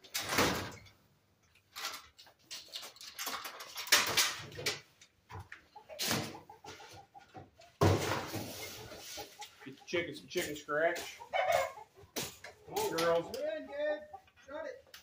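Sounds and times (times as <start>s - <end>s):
chickens clucking: 1.6s - 15.0s
scraping and knocking noises: 1.7s - 13.6s.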